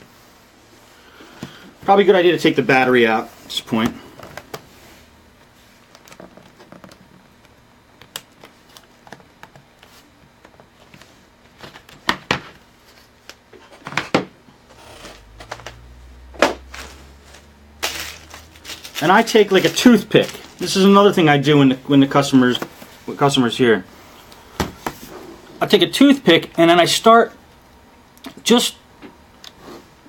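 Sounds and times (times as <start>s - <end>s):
low hum: 14.5s - 19.0s.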